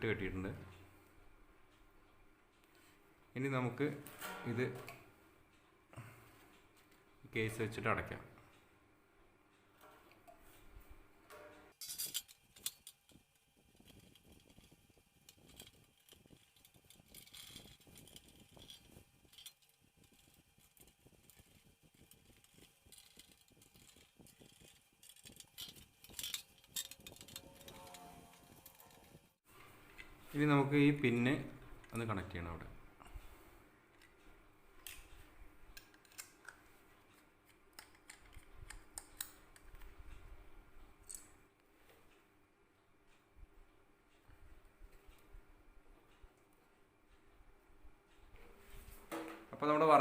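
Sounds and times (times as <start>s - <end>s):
small plastic parts clicking and rattling: 11.8s - 29.3s, 34.8s - 40.2s.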